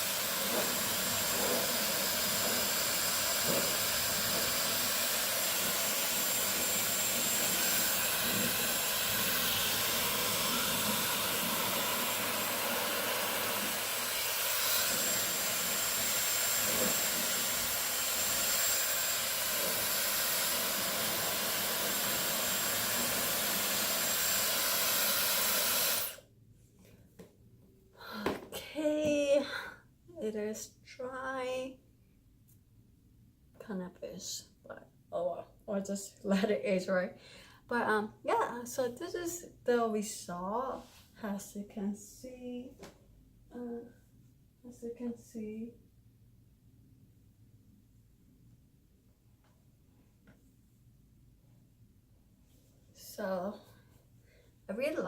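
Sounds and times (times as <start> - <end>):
hair dryer blowing: 0.0 - 26.2.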